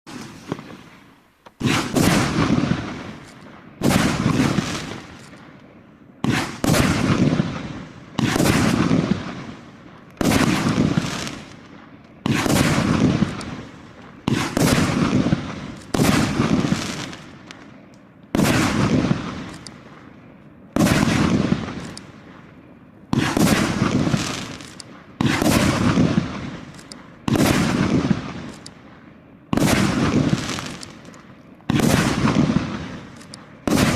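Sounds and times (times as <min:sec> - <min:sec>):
firework launch bangs: 0:01.6 - 0:03.2, 0:03.8 - 0:05.1, 0:06.2 - 0:09.4, 0:12.2 - 0:13.6, 0:14.2 - 0:17.4, 0:23.1 - 0:26.7, 0:29.5 - 0:31.1.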